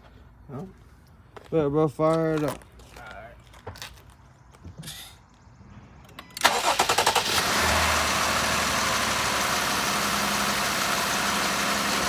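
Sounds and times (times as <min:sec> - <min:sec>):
car engine starting and idling: 0:06.1 - 0:12.0.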